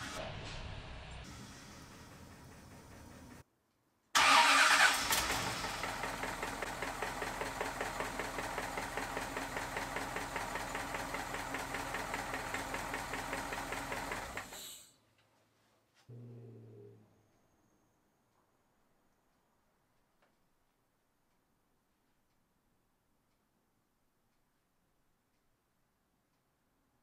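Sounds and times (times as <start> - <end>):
car engine knocking: 5.2 - 14.5.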